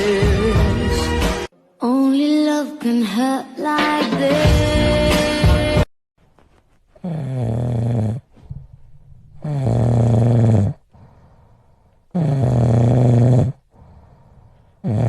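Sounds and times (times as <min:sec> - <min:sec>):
dog groaning: 0:07.0 - 0:11.3, 0:12.1 - 0:14.2.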